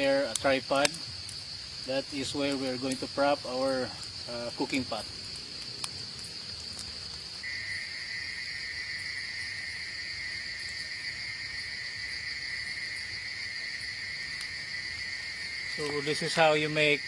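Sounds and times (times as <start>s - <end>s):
high insect trill: 0.0s - 17.0s
lower-pitched insect trill: 0.0s - 17.0s.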